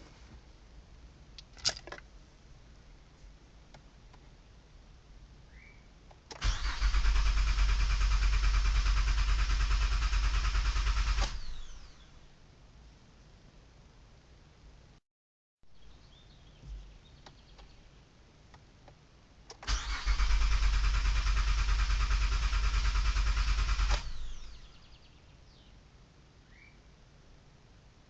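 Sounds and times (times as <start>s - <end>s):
car engine cranking: 6.3s - 11.7s, 19.5s - 24.5s.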